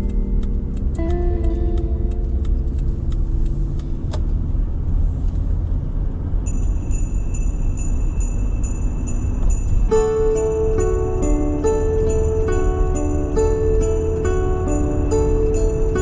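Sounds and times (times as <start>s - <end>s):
background music: 0.0s - 5.2s, 9.4s - 16.0s
car road rumble: 0.0s - 16.0s
sleigh bells shaking in rhythm: 6.5s - 16.0s.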